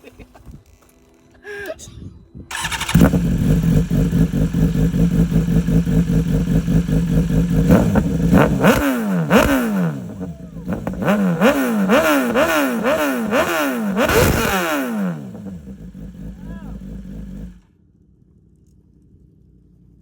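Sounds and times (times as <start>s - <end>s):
motorcycle engine idling: 2.5s - 17.7s
motorcycle engine revving: 2.5s - 17.7s.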